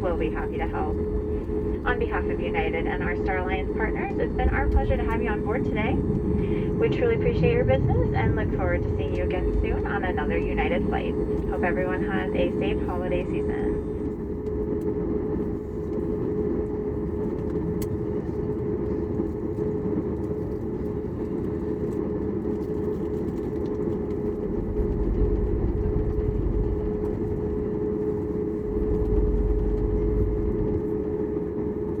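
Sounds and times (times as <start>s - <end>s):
low rumble: 0.0s - 14.6s, 24.2s - 32.0s
airliner cabin hum: 0.0s - 32.0s.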